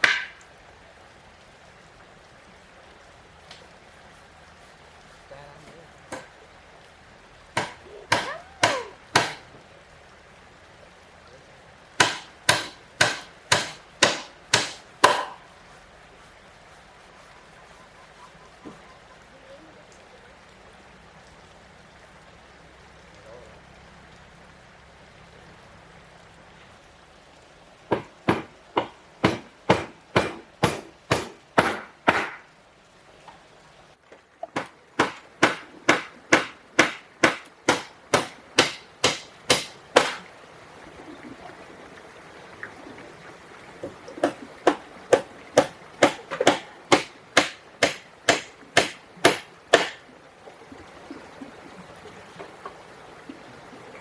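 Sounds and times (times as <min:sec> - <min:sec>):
hand tool striking wood: 0:00.0 - 0:00.4, 0:07.6 - 0:09.4, 0:12.0 - 0:15.4, 0:27.9 - 0:32.4, 0:34.5 - 0:40.2, 0:44.2 - 0:50.0.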